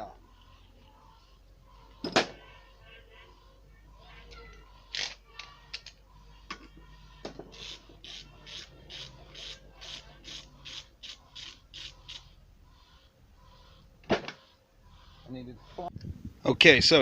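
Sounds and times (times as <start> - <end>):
ratchet wrench clicking: 7.5 - 12.2.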